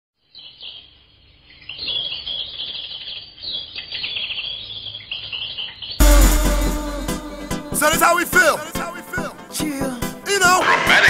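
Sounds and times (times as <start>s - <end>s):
small birds chirping: 0.2s - 6.0s.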